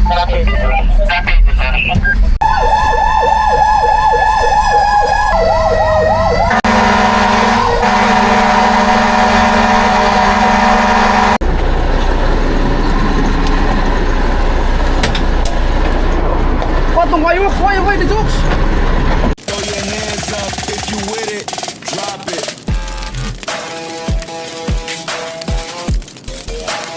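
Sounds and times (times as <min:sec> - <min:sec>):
traffic and engine noise: 0:00.0 - 0:26.9
fire truck siren yelping: 0:02.4 - 0:11.4.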